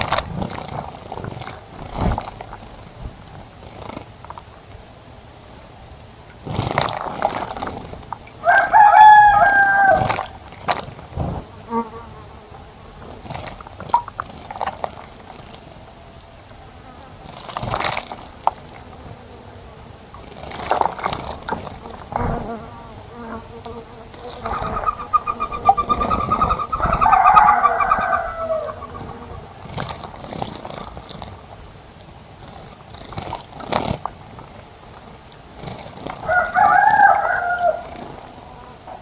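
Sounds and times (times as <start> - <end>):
bird calls: 24.2 - 30.2.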